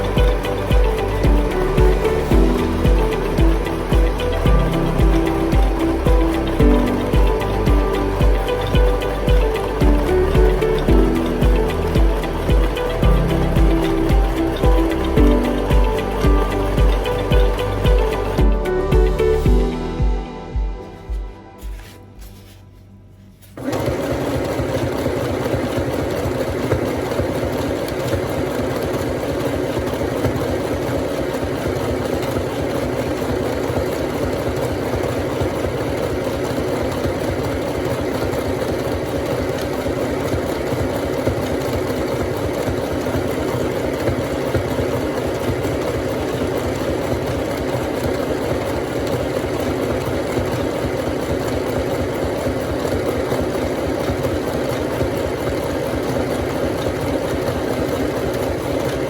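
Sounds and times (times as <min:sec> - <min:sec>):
sewing machine running: 0:23.6 - 0:59.0.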